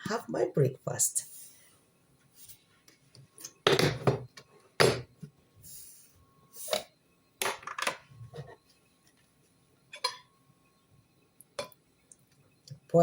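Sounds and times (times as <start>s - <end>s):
dishes knocking and clinking: 3.6s - 5.3s.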